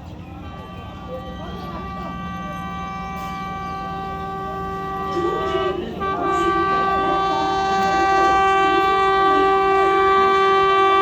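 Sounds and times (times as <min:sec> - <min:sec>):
train horn long note: 0:00.4 - 0:11.0.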